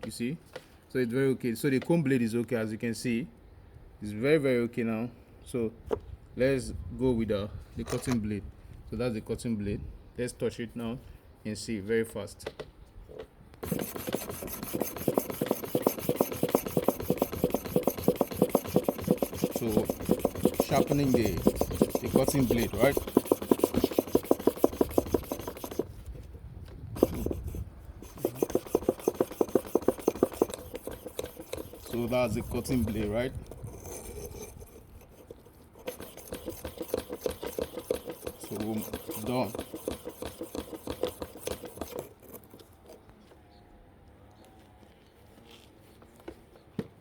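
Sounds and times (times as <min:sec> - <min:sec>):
blade scraping on sharpening stone: 0:13.6 - 0:25.9, 0:27.0 - 0:42.4.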